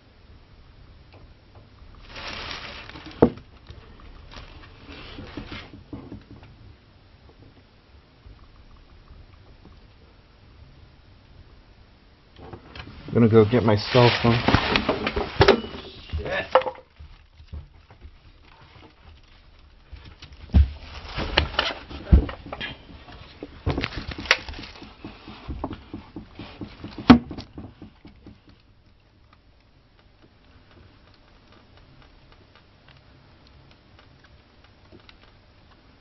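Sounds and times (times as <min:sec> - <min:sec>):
rustling: 0:01.6 - 0:06.7, 0:12.4 - 0:36.0
knocks thumps and clatters: 0:05.2 - 0:06.7, 0:14.2 - 0:18.2, 0:19.9 - 0:28.6.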